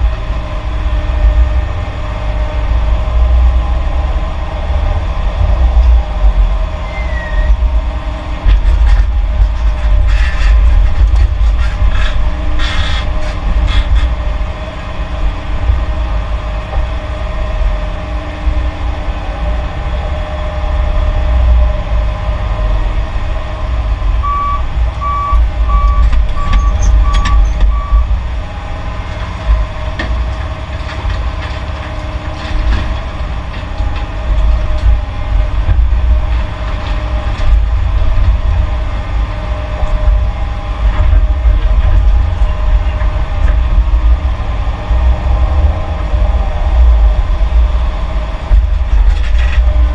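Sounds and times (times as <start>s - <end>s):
heavy diesel engines rumbling: 0.0s - 49.9s
reversing alarm beeping: 24.2s - 28.1s
metal clanks and knocks: 26.0s - 28.1s.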